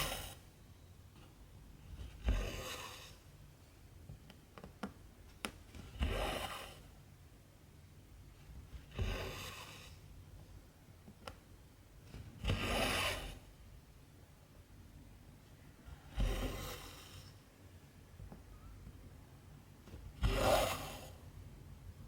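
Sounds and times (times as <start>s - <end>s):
thread rasping through fabric: 1.9s - 3.0s, 5.4s - 6.8s, 19.8s - 21.2s.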